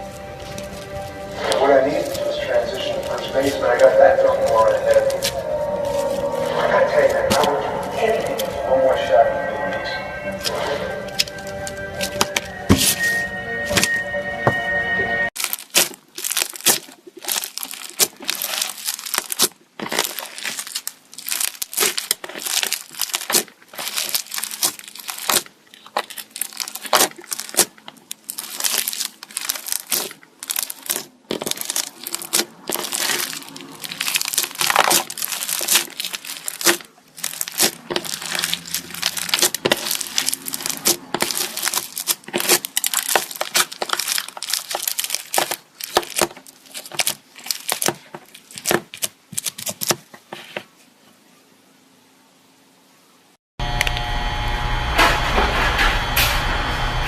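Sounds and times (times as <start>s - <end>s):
slime squishing with clicks: 15.6s - 50.0s.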